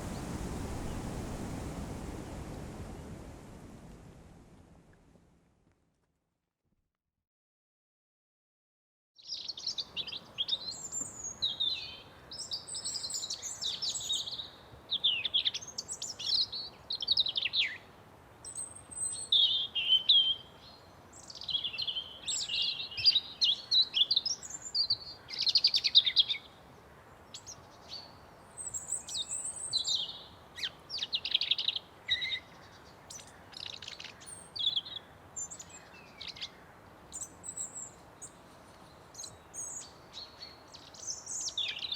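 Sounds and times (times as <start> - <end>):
faint outdoor background: 9.2 - 41.9.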